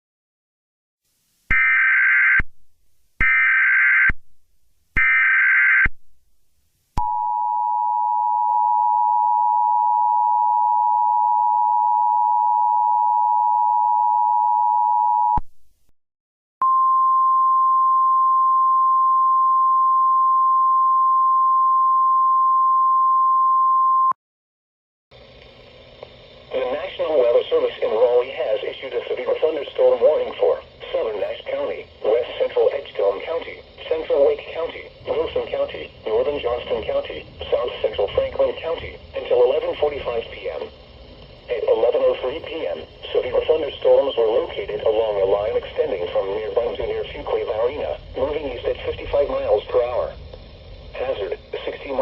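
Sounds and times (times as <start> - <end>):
steady warning tone: 25.7 - 52.0.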